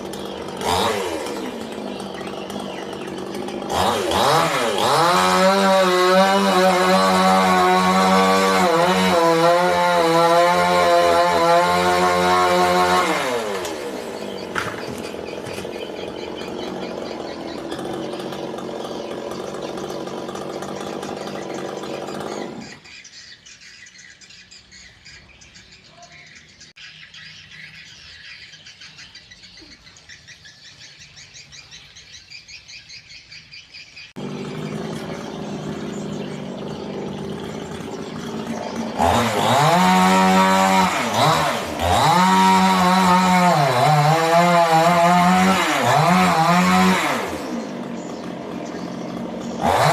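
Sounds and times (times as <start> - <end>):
chainsaw cutting wood: 0.0 - 22.8, 34.2 - 49.9
birds chirping: 0.0 - 49.9.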